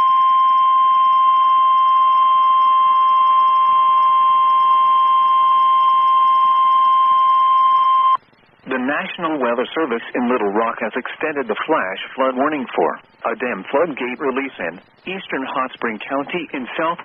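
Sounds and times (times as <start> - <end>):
high steady alarm tone: 0.0 - 8.2.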